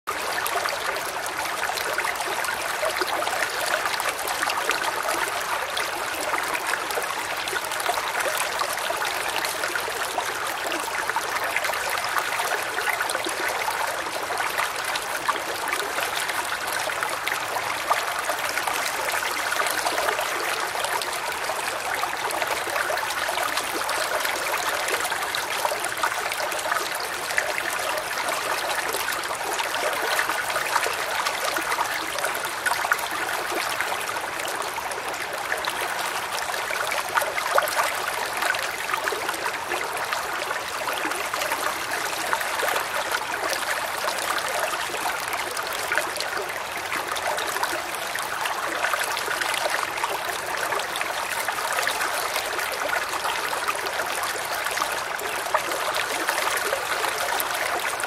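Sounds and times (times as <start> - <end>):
creek babbling over stones: 0.1 - 58.0.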